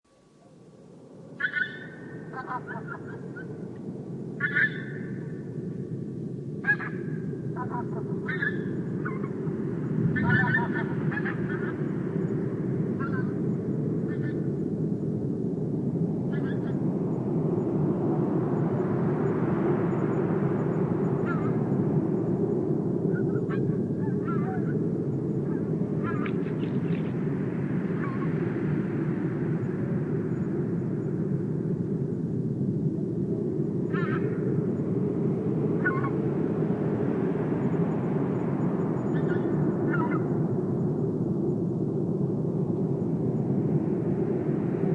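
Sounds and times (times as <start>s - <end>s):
steady low rumble: 0.7s - 44.9s
birds calling: 1.4s - 3.3s, 4.4s - 5.1s, 6.7s - 9.4s, 10.2s - 11.9s.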